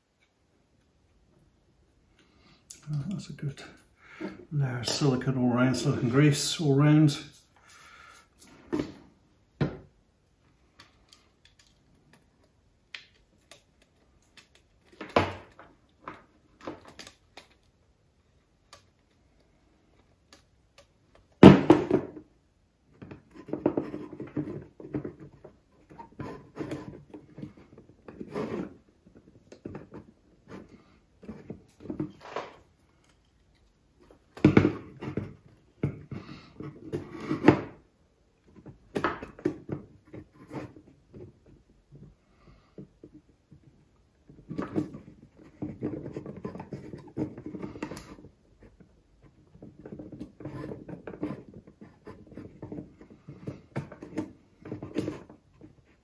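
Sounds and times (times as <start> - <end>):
clicks and knocks of handling parts: 10.5 - 17.8.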